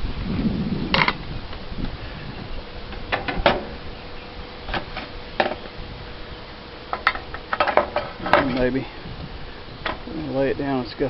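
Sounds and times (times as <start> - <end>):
handling clicks and knocks: 6.9 - 8.7.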